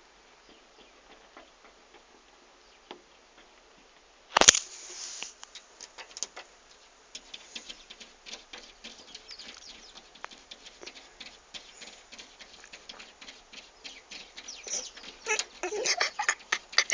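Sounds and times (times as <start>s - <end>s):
cat claws scratching on glass: 7.2s - 16.9s.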